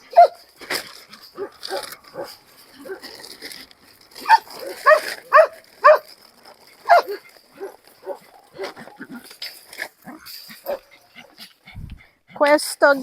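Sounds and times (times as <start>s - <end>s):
dogs barking: 0.0s - 0.5s, 1.3s - 3.2s, 4.2s - 6.2s, 6.8s - 9.0s, 10.0s - 11.6s.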